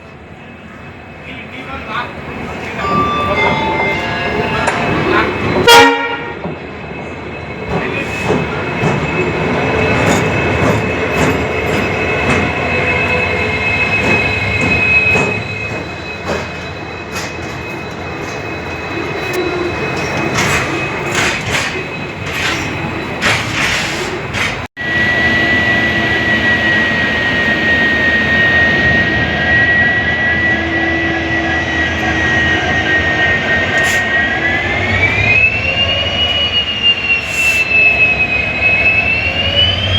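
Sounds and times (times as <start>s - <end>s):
locomotive humming with high whine: 0.0s - 39.9s.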